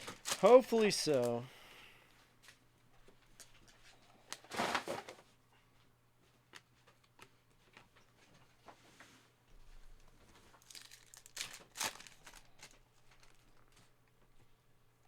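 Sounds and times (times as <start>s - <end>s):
trading cards rustling: 0.0s - 1.4s, 10.6s - 13.9s.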